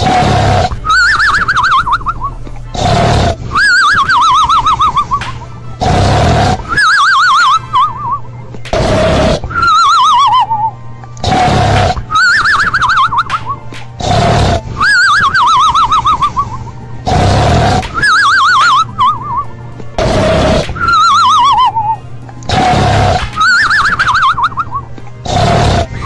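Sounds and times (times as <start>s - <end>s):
rasping snore: 2.7s - 3.4s, 5.8s - 6.6s, 8.7s - 9.4s, 11.2s - 12.0s, 14.0s - 14.7s, 17.0s - 18.0s, 20.0s - 20.8s, 25.2s - 26.0s.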